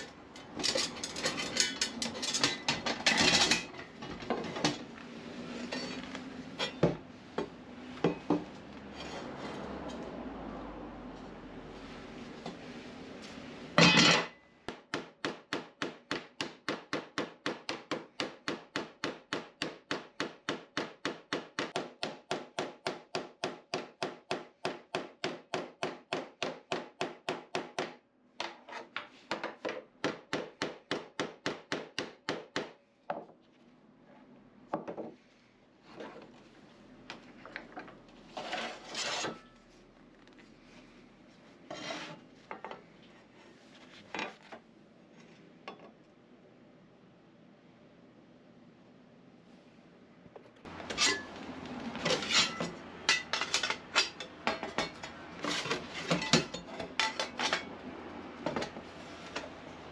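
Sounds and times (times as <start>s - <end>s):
hand tool scraping steel plate: 38.3s - 39.6s, 50.9s - 51.3s, 52.0s - 57.7s.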